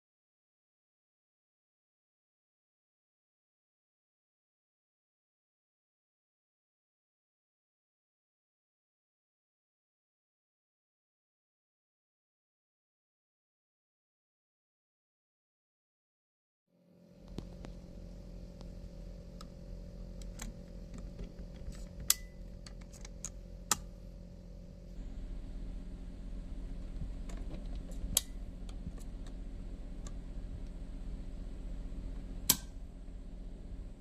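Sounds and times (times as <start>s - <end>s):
steady hum: 16.8s - 34.0s.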